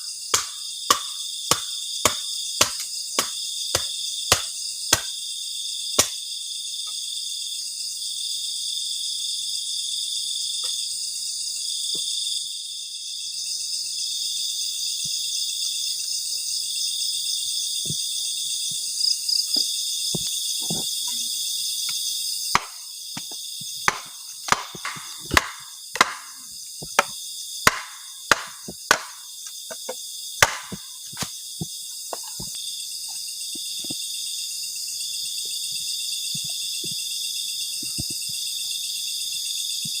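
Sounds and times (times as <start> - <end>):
night insects trilling: 0.0 - 40.0
wood chopping blows: 0.4 - 5.1, 6.0 - 6.2, 22.6 - 31.4.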